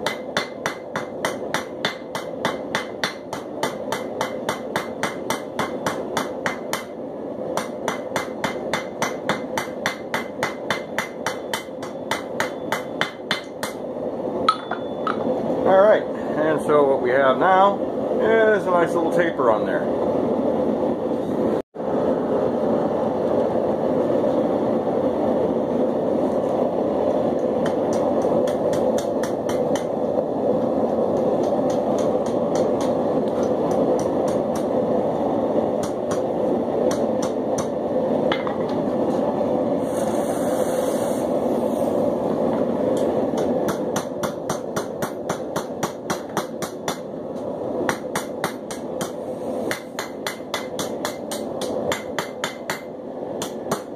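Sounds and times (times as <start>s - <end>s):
hammer striking hot steel on anvil: 0.0s - 15.3s, 27.4s - 34.8s, 35.8s - 36.3s, 36.9s - 38.8s, 43.0s - 47.1s, 47.8s - 53.9s
forge burner rushing: 0.0s - 53.9s.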